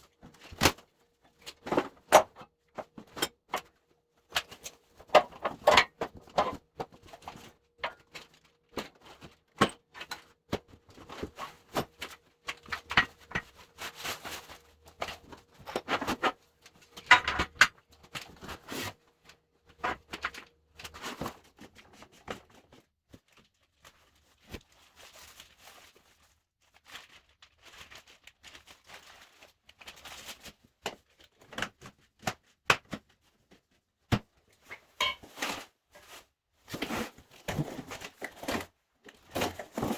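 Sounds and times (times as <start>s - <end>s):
knocks and clatter of parts: 0.3s - 18.9s, 36.7s - 39.9s.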